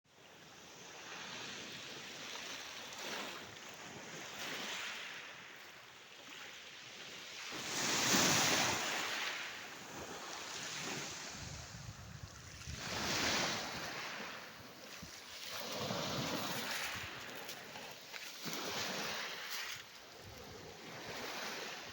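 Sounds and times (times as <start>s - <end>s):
sea waves washing onto shore: 7.2s - 21.9s.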